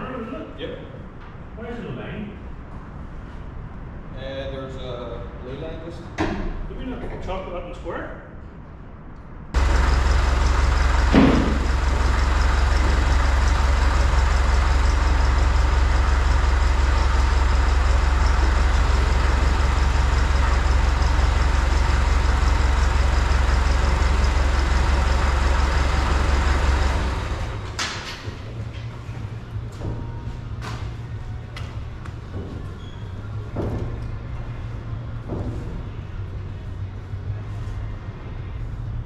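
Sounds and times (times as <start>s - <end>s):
engine idling: 9.6s - 32.4s.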